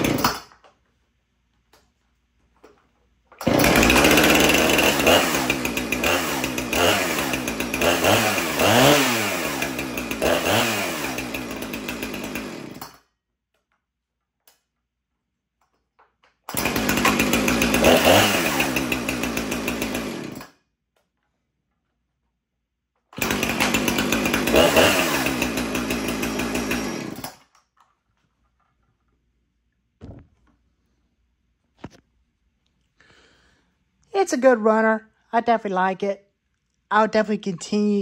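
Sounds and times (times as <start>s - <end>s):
chainsaw engine revving: 0.0s - 0.4s, 3.4s - 13.0s, 16.5s - 20.5s, 23.2s - 27.4s.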